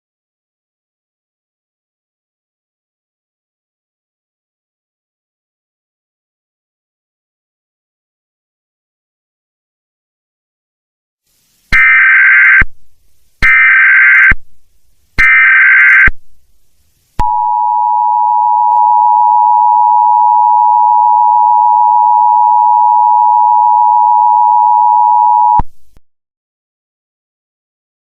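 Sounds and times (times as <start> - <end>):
data burst tones: 11.7 - 12.8, 13.4 - 14.4, 15.2 - 16.2, 17.2 - 25.7
two-tone attention signal: 17.2 - 25.6.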